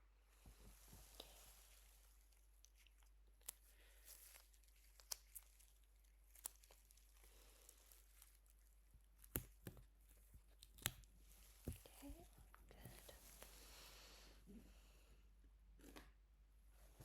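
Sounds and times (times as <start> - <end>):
sticky strips peeling and crinkling: 0.8 - 13.5.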